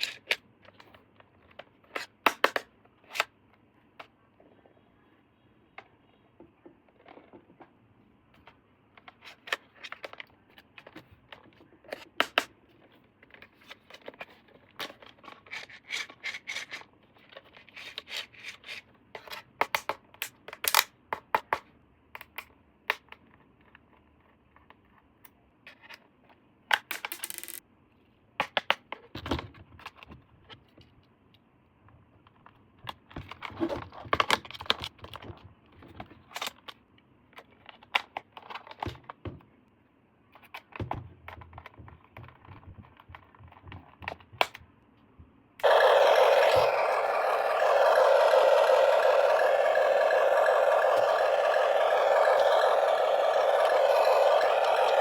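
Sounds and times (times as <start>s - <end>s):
plastic parts clicking and scraping: 26.9s - 27.6s.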